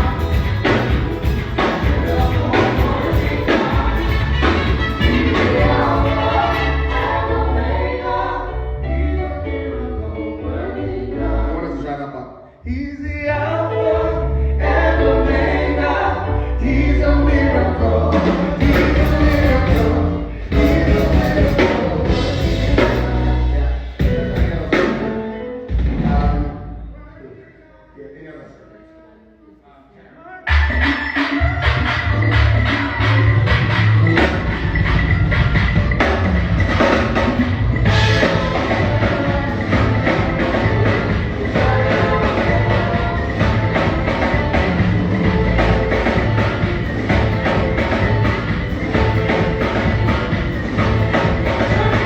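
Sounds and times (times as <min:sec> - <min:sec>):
drum kit beat: 0:00.0 - 0:07.2, 0:18.2 - 0:26.6, 0:30.5 - 0:52.0
live band playing gospel music: 0:00.0 - 0:11.8, 0:13.5 - 0:26.9, 0:30.4 - 0:52.0
people singing: 0:00.0 - 0:25.3, 0:30.4 - 0:52.0
bass: 0:00.0 - 0:28.6, 0:30.4 - 0:52.0.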